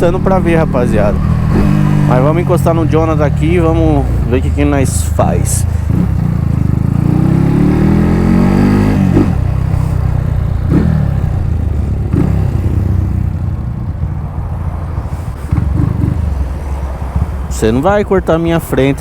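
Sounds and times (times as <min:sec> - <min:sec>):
motorcycle engine accelerating: 0:00.0 - 0:17.4.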